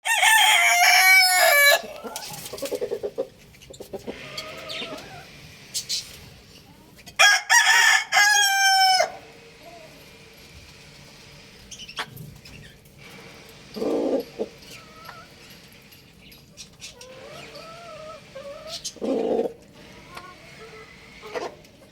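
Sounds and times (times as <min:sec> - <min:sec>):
rooster crowing: 0:00.0 - 0:02.1, 0:07.2 - 0:09.4
quiet clucking calls: 0:01.8 - 0:07.2, 0:13.6 - 0:15.6, 0:16.2 - 0:21.9.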